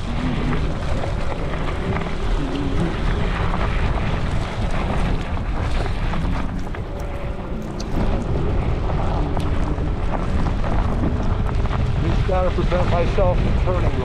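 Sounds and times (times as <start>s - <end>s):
wind buffeting microphone: 0.0s - 14.0s
small ticks: 4.8s - 12.0s.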